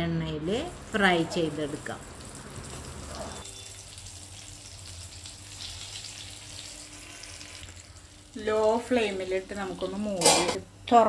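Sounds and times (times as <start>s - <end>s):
food sizzling in hot oil: 0.3s - 10.6s.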